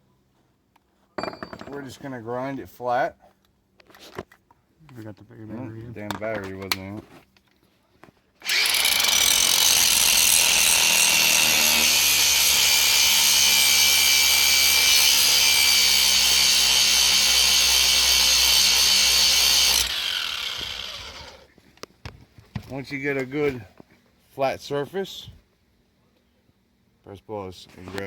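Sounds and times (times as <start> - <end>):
angle grinder grinding metal: 8.4 - 21.5.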